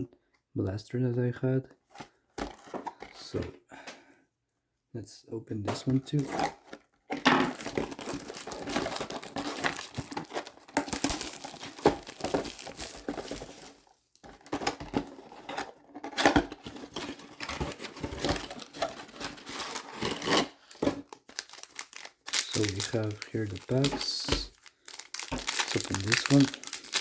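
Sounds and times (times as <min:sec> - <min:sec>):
wrapping crinkling and tearing: 0:07.4 - 0:27.0.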